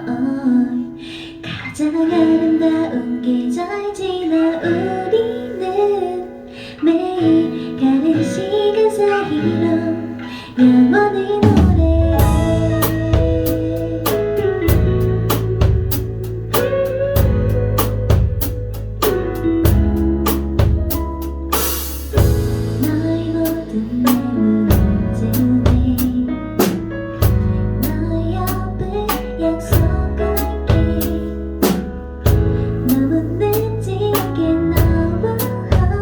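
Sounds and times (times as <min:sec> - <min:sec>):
drum kit beat: 0:11.4 - 0:36.0
live band music: 0:11.4 - 0:36.0.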